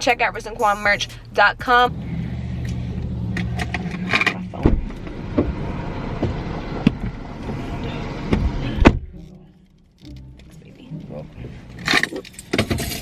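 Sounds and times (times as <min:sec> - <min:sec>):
car engine hum: 0:00.0 - 0:11.9.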